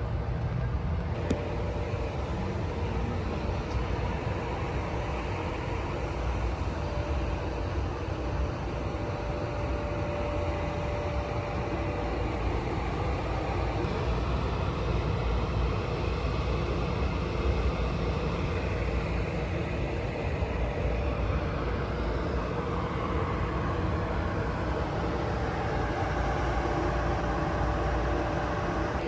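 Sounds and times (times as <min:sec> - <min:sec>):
vehicle rumble and hiss: 0:00.0 - 0:29.0.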